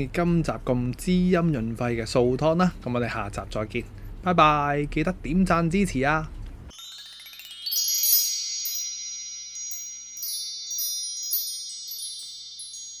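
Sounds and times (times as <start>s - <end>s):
chimes ringing: 6.7s - 13.0s.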